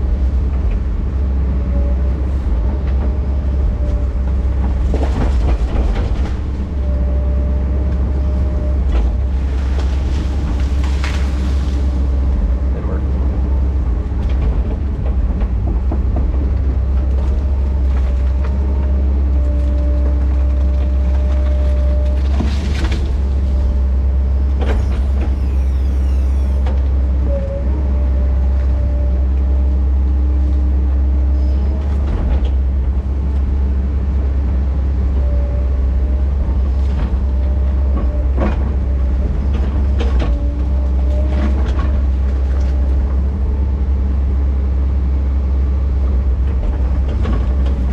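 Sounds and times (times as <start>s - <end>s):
heavy diesel engine droning: 0.0s - 47.9s
hydraulic whine: 24.2s - 27.6s.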